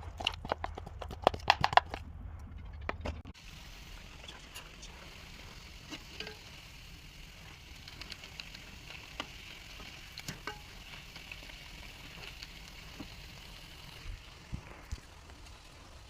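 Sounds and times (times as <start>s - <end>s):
fritters sizzling in hot oil: 3.4s - 16.0s.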